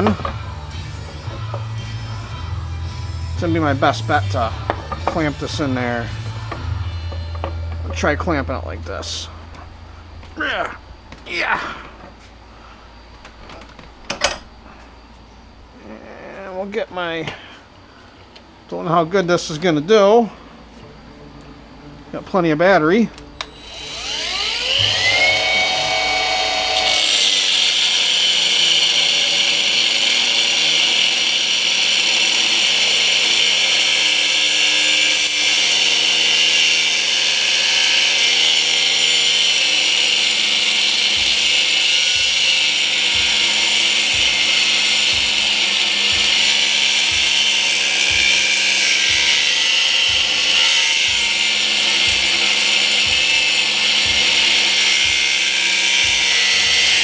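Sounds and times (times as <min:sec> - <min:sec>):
cutting tool cutting metal: 0:23.5 - 0:57.0.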